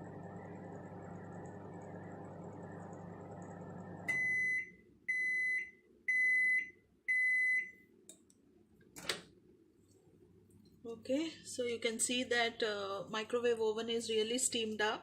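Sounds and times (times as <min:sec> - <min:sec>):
microwave oven humming: 0:00.0 - 0:07.7
microwave high beeps: 0:04.1 - 0:07.8.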